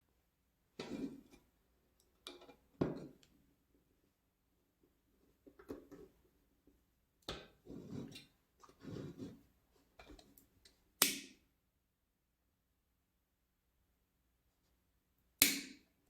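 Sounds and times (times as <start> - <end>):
rubbing and scraping on speaker box: 7.6 - 9.5.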